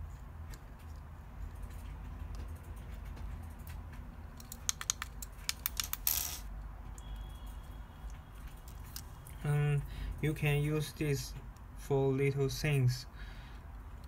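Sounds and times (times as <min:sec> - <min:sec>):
screwdriver clicking on metal case: 0:04.4 - 0:06.1.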